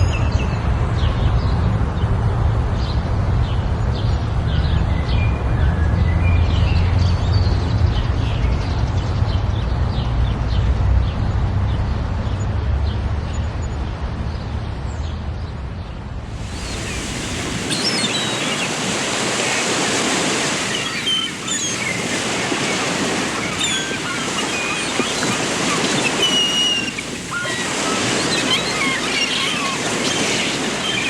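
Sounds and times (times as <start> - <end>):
steady rushing noise: 16.1 - 31.0
small birds chirping: 16.4 - 31.0.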